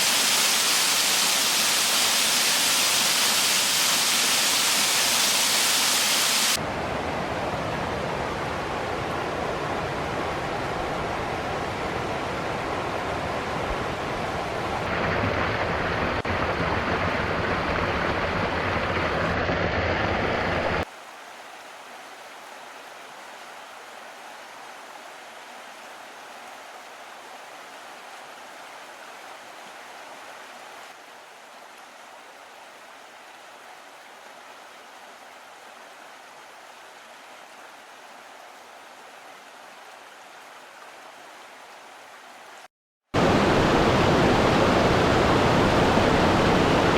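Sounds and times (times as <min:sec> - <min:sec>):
waterfall rushing: 0:00.0 - 0:06.6, 0:12.5 - 0:20.9, 0:43.2 - 0:46.9.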